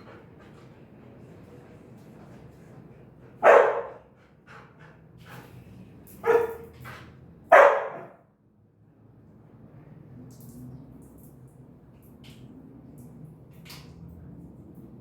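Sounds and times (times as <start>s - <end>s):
dog barking: 3.4s - 4.0s, 6.2s - 6.6s, 7.5s - 8.2s.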